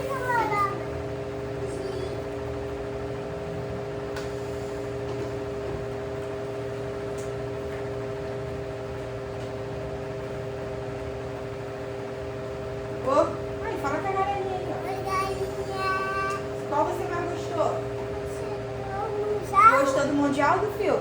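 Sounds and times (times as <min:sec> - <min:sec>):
electric desk fans running: 0:00.0 - 0:21.0.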